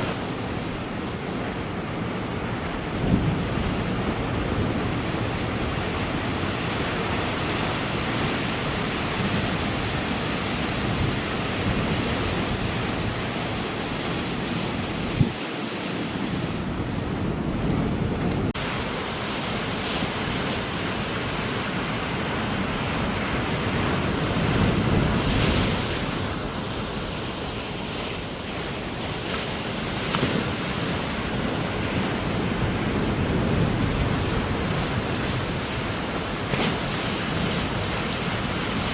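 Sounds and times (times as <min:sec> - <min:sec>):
wind buffeting microphone: 0:00.0 - 0:18.7
ocean surf breaking: 0:00.0 - 0:38.9.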